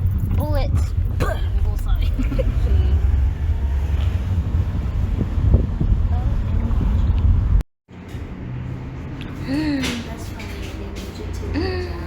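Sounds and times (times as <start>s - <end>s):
loud low rumble: 0.0s - 7.6s
wind buffeting microphone: 0.0s - 7.6s.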